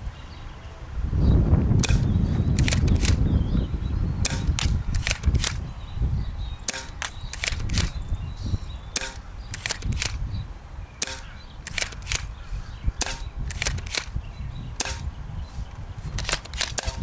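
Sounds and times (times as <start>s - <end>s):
airsoft shotgun pumping and firing: 1.8s - 3.3s, 4.2s - 5.7s, 6.7s - 8.0s, 8.9s - 10.3s, 11.0s - 12.4s, 13.0s - 14.2s, 14.8s - 15.2s, 16.1s - 17.0s.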